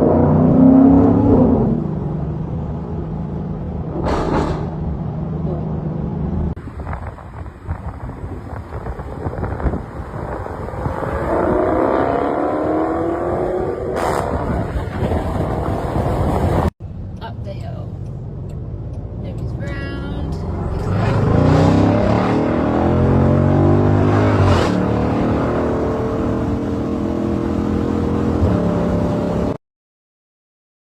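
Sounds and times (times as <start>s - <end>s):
car engine idling and revving: 0.0s - 29.6s.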